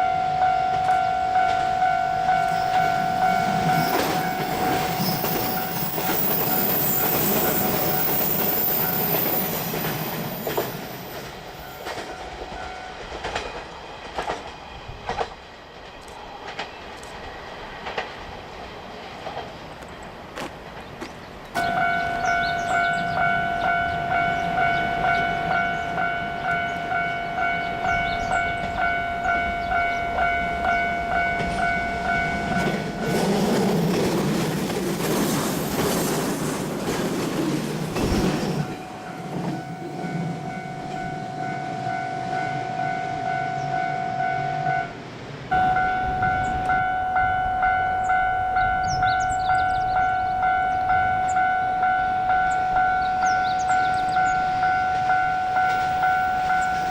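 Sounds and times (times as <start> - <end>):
level crossing alarm ringing: 0.0 - 13.0, 21.6 - 33.3, 38.6 - 56.9
electric train passing: 0.0 - 56.9.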